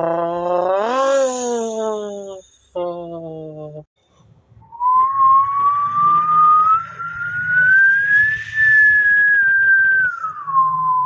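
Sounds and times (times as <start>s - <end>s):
person whistling rising note: 4.7s - 11.0s.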